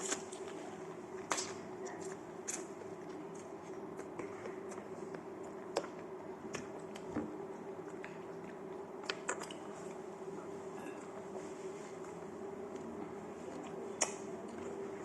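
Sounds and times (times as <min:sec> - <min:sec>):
person chewing food: 0:00.0 - 0:10.1.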